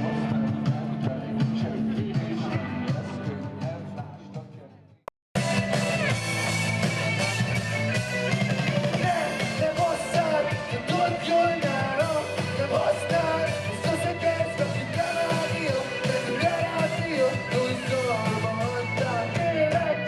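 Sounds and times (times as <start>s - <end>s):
rock song with singing: 0.0s - 4.8s, 5.4s - 20.0s.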